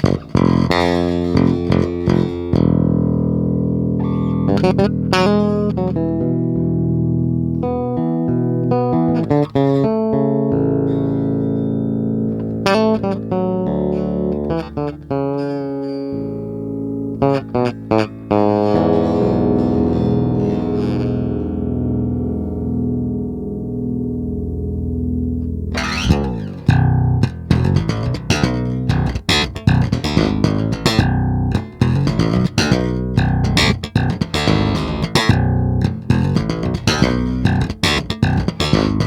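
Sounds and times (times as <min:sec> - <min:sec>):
bass guitar playing: 0:00.0 - 0:39.0.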